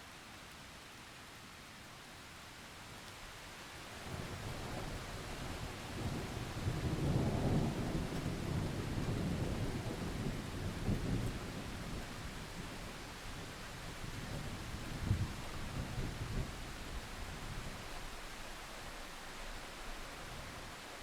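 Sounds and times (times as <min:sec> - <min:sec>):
steady rain: 0:00.0 - 0:21.0
thunder rumbling: 0:04.1 - 0:12.8.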